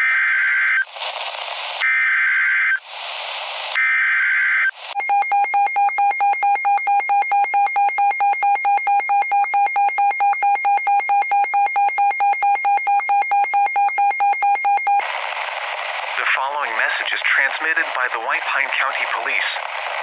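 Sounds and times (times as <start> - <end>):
static hiss: 0.8 - 1.8, 2.7 - 3.8
pulsing alarm tone: 5.0 - 15.0.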